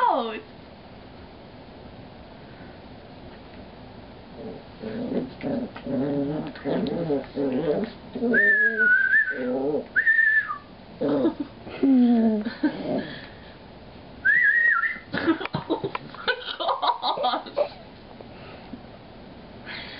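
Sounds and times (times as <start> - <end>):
dog whining and moaning: 4.4 - 13.2.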